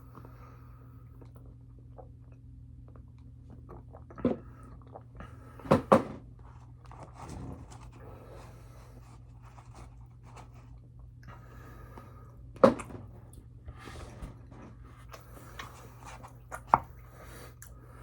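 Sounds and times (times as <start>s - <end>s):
steady low hum: 0.0s - 18.0s
person chewing and eating: 14.9s - 17.8s.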